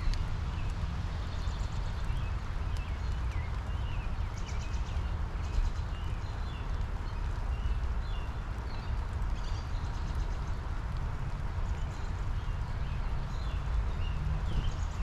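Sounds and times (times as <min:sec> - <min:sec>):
rain falling on a bush: 0:00.0 - 0:15.0
birds chirping: 0:11.4 - 0:15.0.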